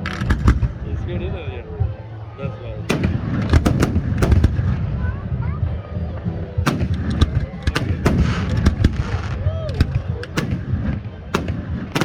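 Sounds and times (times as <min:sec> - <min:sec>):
fireworks bursting with sharp bangs: 0:00.0 - 0:01.0, 0:02.9 - 0:05.1, 0:06.7 - 0:12.0.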